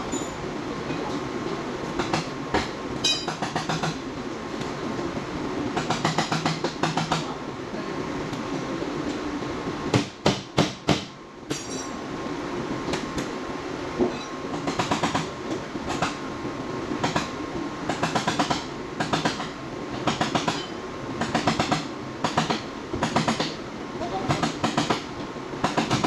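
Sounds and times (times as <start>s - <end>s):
rapid metallic clicking of hand tools: 17.9s - 23.6s, 24.3s - 26.0s.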